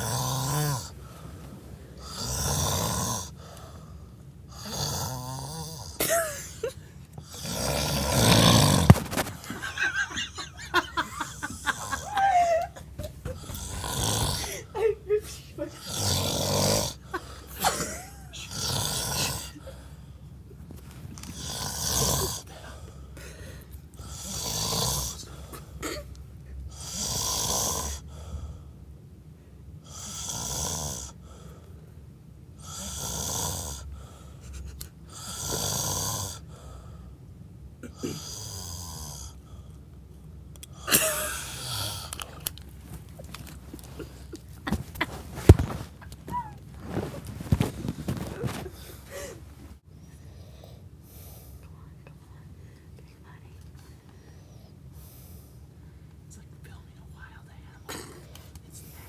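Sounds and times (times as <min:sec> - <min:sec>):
man snoring: 0:00.0 - 0:01.0, 0:02.0 - 0:03.6, 0:04.5 - 0:12.3, 0:13.3 - 0:14.7, 0:15.7 - 0:19.8, 0:21.3 - 0:22.8, 0:24.0 - 0:26.0, 0:26.7 - 0:28.0, 0:29.9 - 0:31.2, 0:32.6 - 0:33.9, 0:35.2 - 0:36.4, 0:37.9 - 0:39.4, 0:40.8 - 0:42.2, 0:43.5 - 0:49.7.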